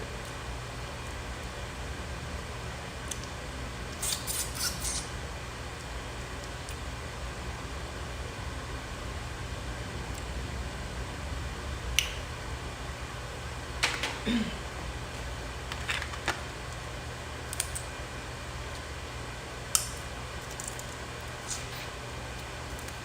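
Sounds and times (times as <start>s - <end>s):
steady low hum: 0.0s - 23.0s
crab shells cracking: 17.4s - 17.9s, 19.7s - 21.6s.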